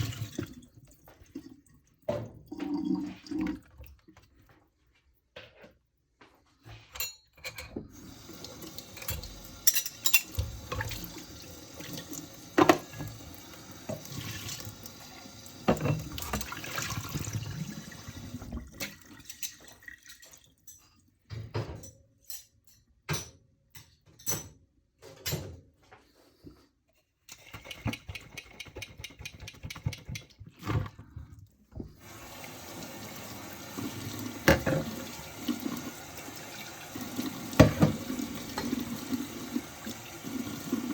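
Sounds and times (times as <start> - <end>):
tap water running: 0.0 - 4.5, 7.8 - 20.6, 27.3 - 40.9
dishes clinking: 8.6 - 11.1, 12.6 - 13.2, 15.6 - 16.6, 34.4 - 35.0.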